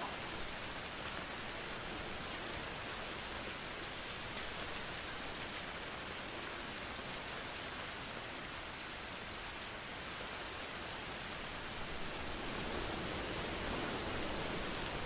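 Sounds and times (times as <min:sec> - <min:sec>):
heavy rain hissing: 0:00.0 - 0:07.3, 0:10.4 - 0:15.0.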